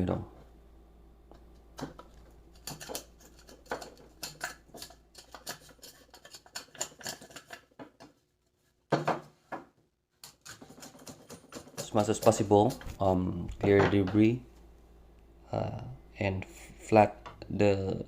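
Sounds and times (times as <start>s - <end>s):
chisel scraping wood: 10.3s - 13.0s.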